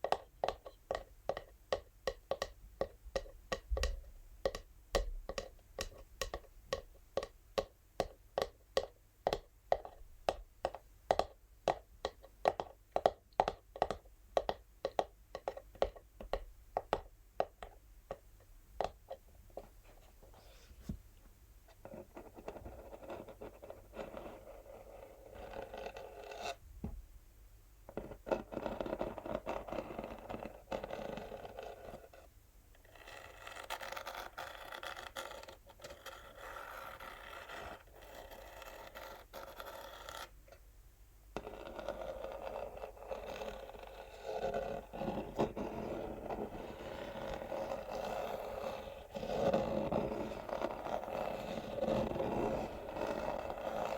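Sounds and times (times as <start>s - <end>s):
fingernails tapping on cardboard: 0.0s - 19.7s
scratching on cardboard: 28.0s - 40.3s, 41.4s - 53.9s.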